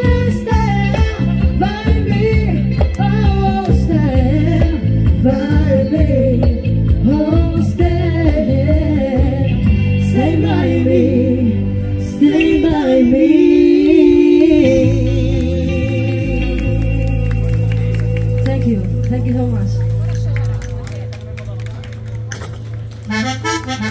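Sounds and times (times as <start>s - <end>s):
women singing: 0.0s - 16.8s
backing track with steady beat: 0.0s - 23.9s.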